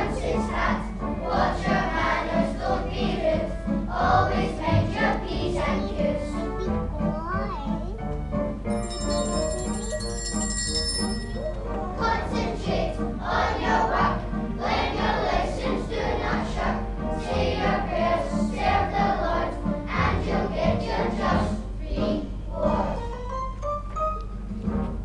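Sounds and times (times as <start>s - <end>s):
music with singing voices: 0.0s - 6.5s, 11.2s - 23.4s
bright bell-like ringing: 8.7s - 11.7s.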